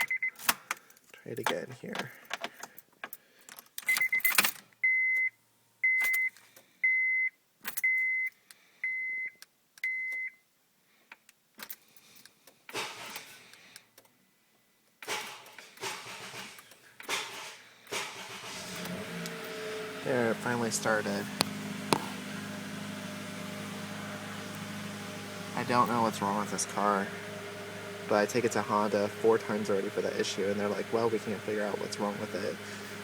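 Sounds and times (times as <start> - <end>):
car engine starting: 12.7 - 13.4, 15.1 - 33.0
click under the dash: 18.7 - 26.8.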